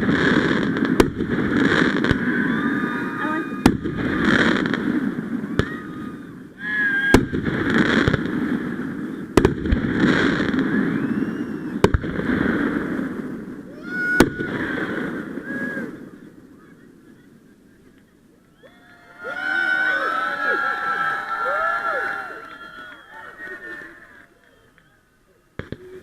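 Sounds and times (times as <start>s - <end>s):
fireworks bangs with crackling hiss: 0.0s - 18.4s, 25.5s - 26.0s.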